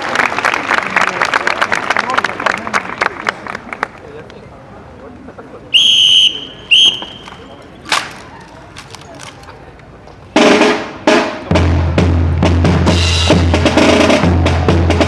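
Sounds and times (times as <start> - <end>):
whistle blasts: 5.7 - 7.5
sharp crack: 6.2 - 9.6
drums: 10.3 - 15.0.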